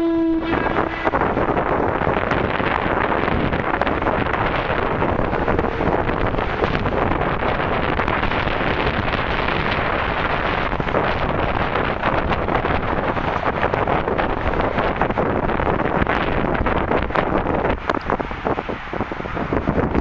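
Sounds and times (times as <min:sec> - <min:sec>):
wind blowing across microphone: 0:00.0 - 0:20.0.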